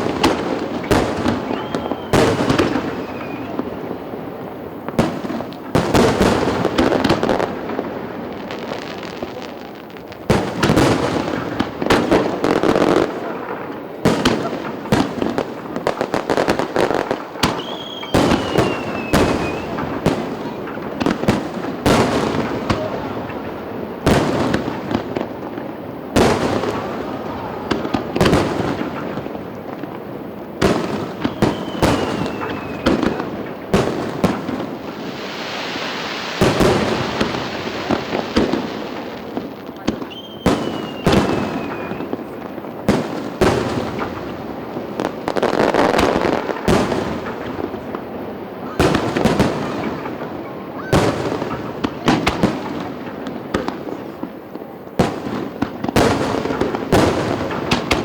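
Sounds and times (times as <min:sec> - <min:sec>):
falling firework whistle: 0:00.0 - 0:04.0, 0:17.4 - 0:21.2, 0:31.0 - 0:33.3, 0:34.8 - 0:39.0, 0:39.9 - 0:42.4
fireworks bangs: 0:00.0 - 0:58.0
fireworks crackling: 0:00.0 - 0:58.0.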